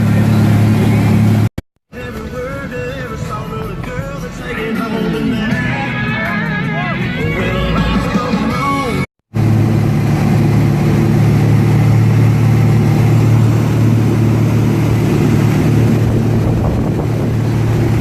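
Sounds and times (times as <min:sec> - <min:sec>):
engine droning: 0:00.0 - 0:18.0
wind on microphone: 0:10.2 - 0:18.0.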